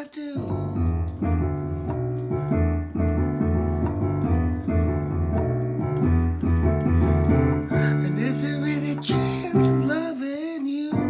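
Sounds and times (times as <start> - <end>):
deep bass line: 0.4 - 7.8
electric piano chords: 0.4 - 10.2.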